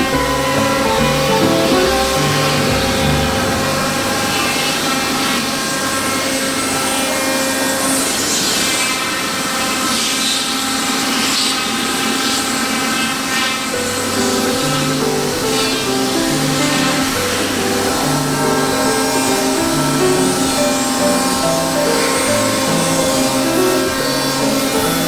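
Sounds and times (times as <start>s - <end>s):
background music: 0.0s - 5.4s, 13.7s - 25.0s
milling machine rasping wood: 0.0s - 25.0s.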